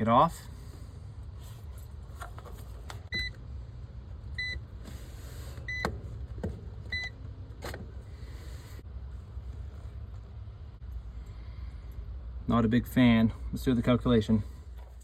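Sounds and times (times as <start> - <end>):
steady low rumble: 6.1 - 15.0.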